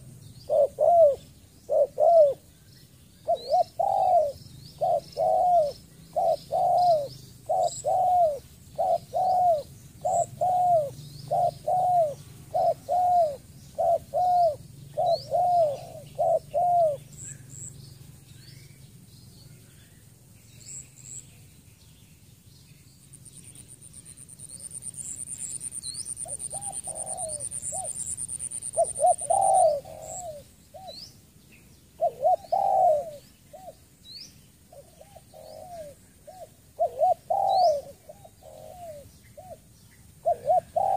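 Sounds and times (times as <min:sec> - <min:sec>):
dove cooing: 0:00.0 - 0:02.5, 0:03.2 - 0:17.4, 0:24.6 - 0:31.0, 0:32.0 - 0:33.8, 0:34.7 - 0:40.9
small birds chirping: 0:00.0 - 0:40.9.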